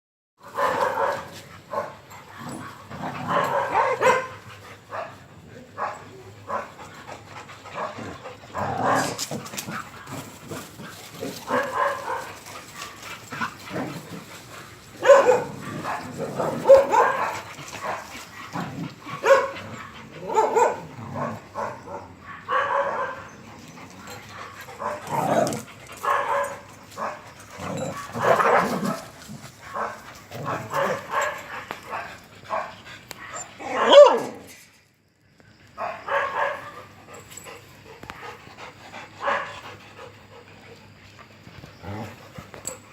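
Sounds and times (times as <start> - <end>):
dogs barking: 0.4 - 6.9, 7.6 - 14.1, 14.9 - 23.4, 24.1 - 34.4, 35.8 - 36.9, 39.2 - 39.8.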